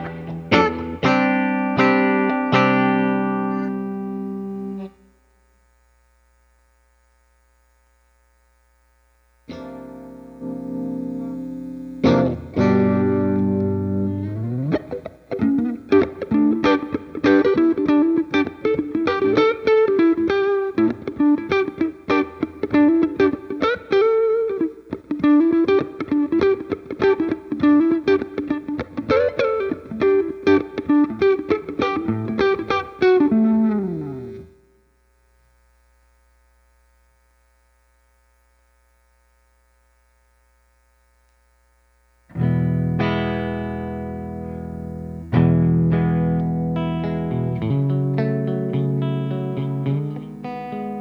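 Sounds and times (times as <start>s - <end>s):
electric guitar melodic run: 0.0s - 5.1s, 9.5s - 34.8s, 42.3s - 51.0s
electric guitar chord ringing: 0.0s - 5.2s, 9.5s - 34.8s, 42.3s - 51.0s
faint hum: 0.0s - 51.0s.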